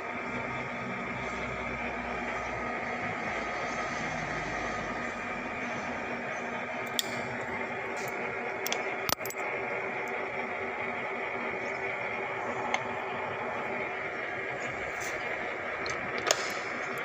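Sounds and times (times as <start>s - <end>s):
metal lathe humming: 0.0s - 17.0s.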